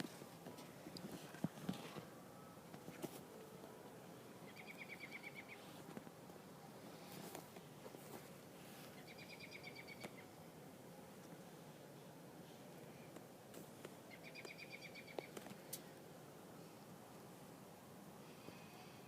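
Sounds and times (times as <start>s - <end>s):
faint outdoor background noise: 0.0s - 19.0s
bird trilling: 4.5s - 5.6s, 14.1s - 15.3s.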